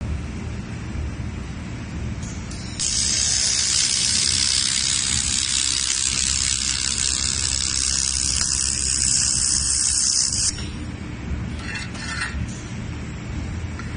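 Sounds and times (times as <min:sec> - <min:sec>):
laser welder hissing: 0:02.8 - 0:10.8.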